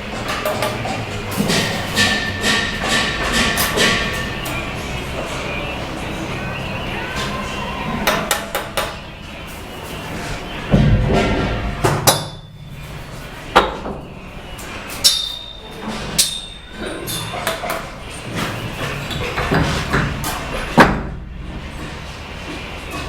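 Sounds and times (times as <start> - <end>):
low thud: 10.7 - 12.9.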